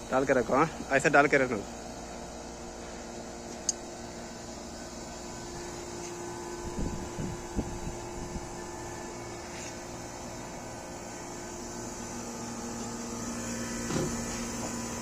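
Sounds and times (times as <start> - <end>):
air conditioner humming: 0.0 - 15.0
sharp click: 3.5 - 3.8.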